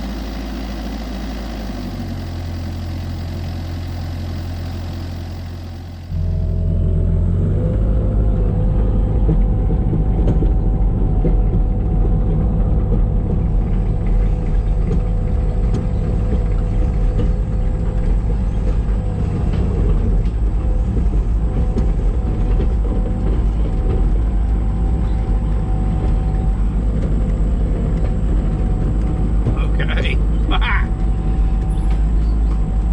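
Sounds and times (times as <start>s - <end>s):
faint steady whine: 0.0s - 11.0s
diesel engine rumble: 0.0s - 32.9s.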